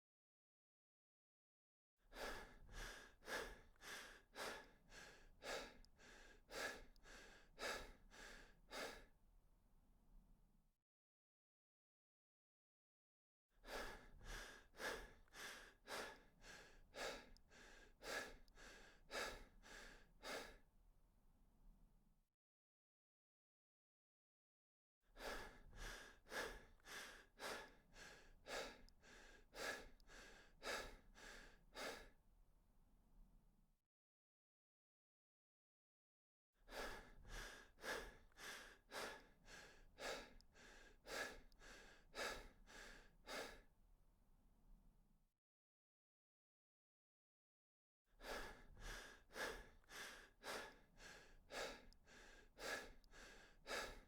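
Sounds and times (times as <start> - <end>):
person breathing hard: 2.1 - 9.2, 13.6 - 20.7, 25.2 - 32.2, 36.7 - 43.7, 48.2 - 54.0.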